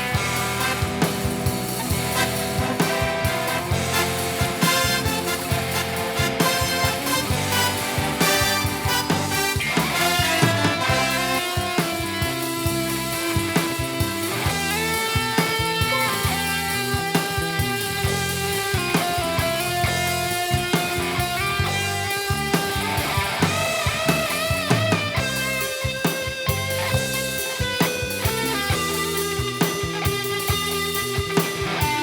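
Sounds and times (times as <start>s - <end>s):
instrumental music with beat: 0.0s - 32.0s.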